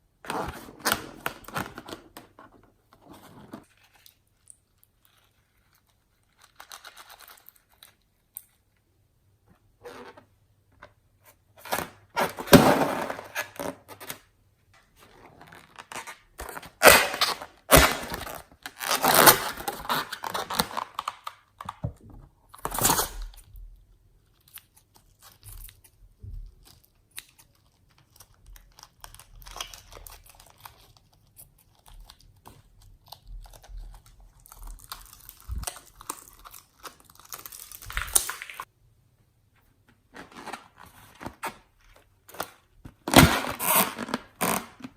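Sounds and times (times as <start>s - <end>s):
crunchy slime squishing: 22.6s - 38.7s.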